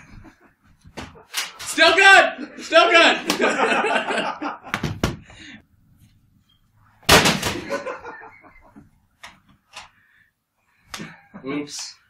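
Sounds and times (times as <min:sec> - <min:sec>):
laptop crashing: 0:07.0 - 0:07.9.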